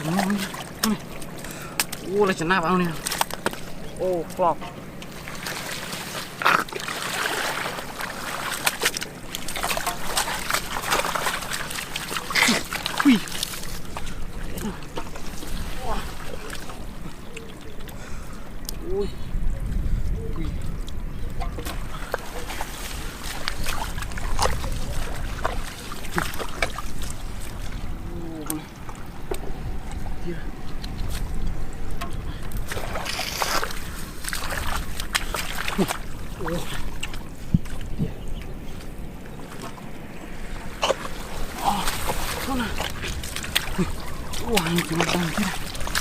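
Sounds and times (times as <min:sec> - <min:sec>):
low steady rumble: 0:00.0 - 0:35.4
muddy water splashing and sloshing: 0:00.0 - 0:46.0.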